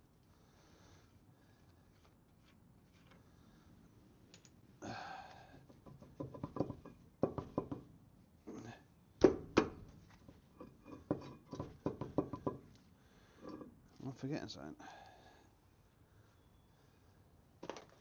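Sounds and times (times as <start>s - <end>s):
tool scraping: 10.4s - 12.6s.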